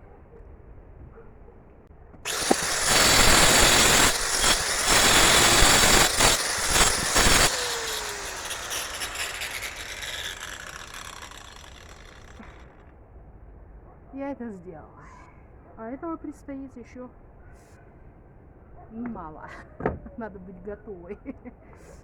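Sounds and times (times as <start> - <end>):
angle grinder cutting brick: 2.3 - 12.9.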